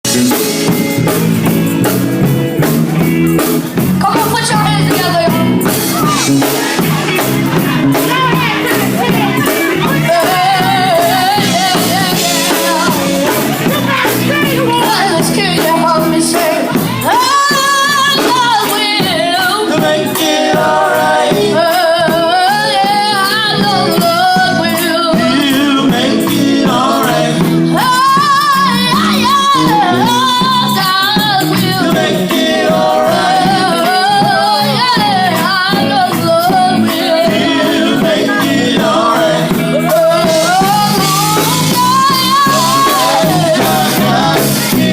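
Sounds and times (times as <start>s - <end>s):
instrumental backing: 0.0s - 44.9s
gospel group singing: 4.0s - 44.9s.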